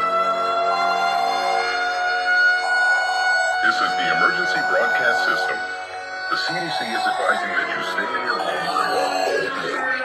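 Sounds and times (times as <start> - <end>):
sustained electronic tones: 3.6 - 10.0.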